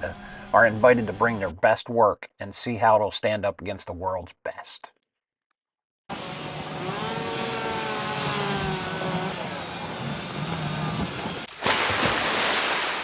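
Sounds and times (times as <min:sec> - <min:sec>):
chainsaw engines droning: 0:06.1 - 0:11.5.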